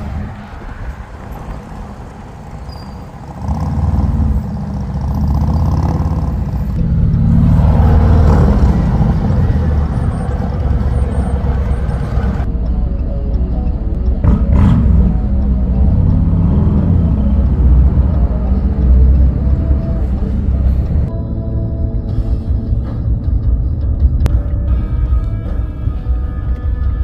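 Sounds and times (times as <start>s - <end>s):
motorcycle engine running loud: 2.7s - 12.5s.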